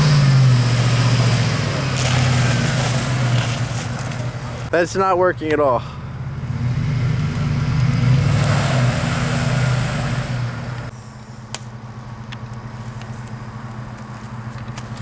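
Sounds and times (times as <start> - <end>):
car engine revving: 0.0 - 4.8, 5.8 - 10.9.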